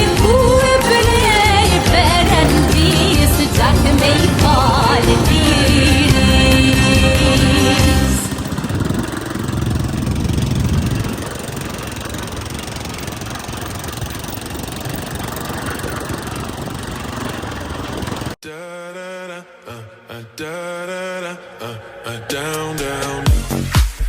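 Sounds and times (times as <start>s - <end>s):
song playing: 0.0s - 8.5s
off-road motorcycle engine running: 0.0s - 18.4s.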